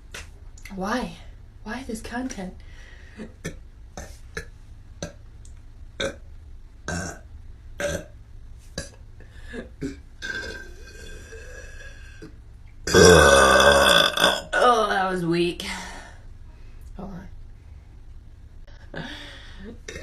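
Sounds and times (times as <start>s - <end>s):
woman burping: 6.9s - 7.2s, 7.8s - 8.1s, 8.8s - 12.3s, 12.9s - 14.7s, 19.8s - 20.0s.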